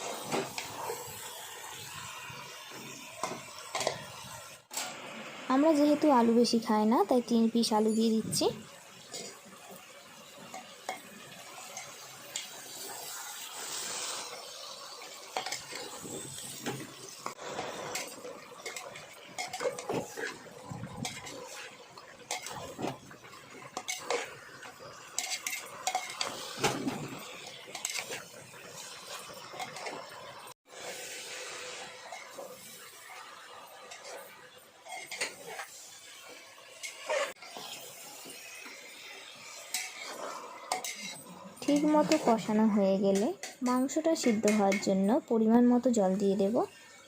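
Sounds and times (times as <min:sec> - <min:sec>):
light sizzle of frying meat: 0:00.0 - 0:47.0
spatula scraping metal pot: 0:23.7 - 0:24.4, 0:25.2 - 0:28.2, 0:33.9 - 0:35.8, 0:36.8 - 0:37.8, 0:39.6 - 0:42.4.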